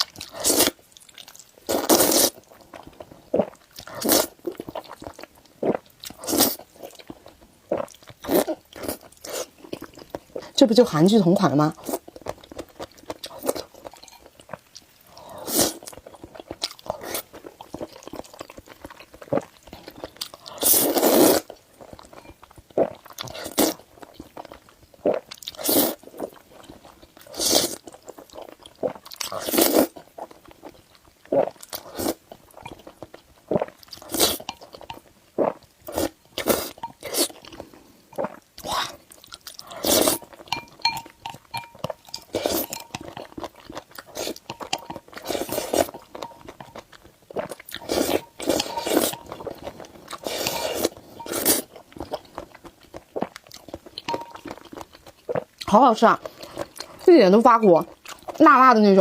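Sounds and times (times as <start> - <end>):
chewing and biting noodles: 11.8 - 57.0.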